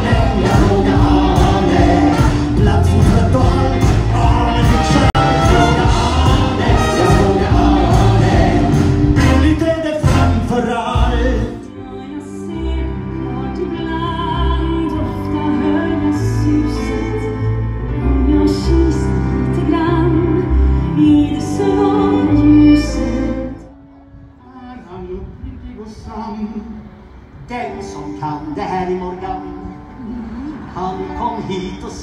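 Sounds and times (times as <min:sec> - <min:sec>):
instrumental accompaniment with bass: 0:00.0 - 0:24.6.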